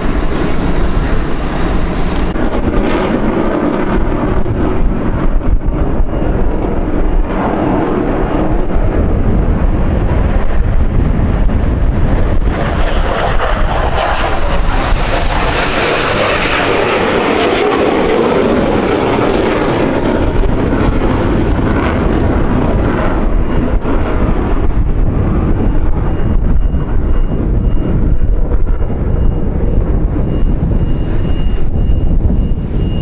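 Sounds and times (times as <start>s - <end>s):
airplane engine passing: 0.0s - 26.2s
wind rumble on microphone: 0.0s - 33.0s.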